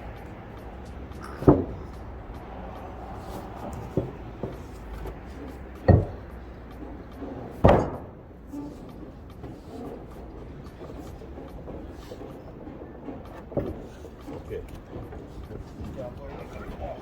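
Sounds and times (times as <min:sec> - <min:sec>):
steady low rumble: 0:00.0 - 0:09.4
small knocks: 0:00.0 - 0:17.0
masonry pieces thudding: 0:00.1 - 0:17.0.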